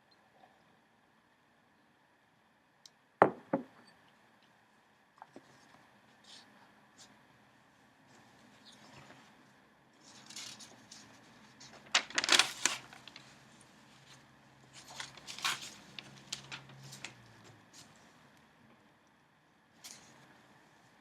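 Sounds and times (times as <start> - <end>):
paper rustling and crinkling: 10.0 - 18.0.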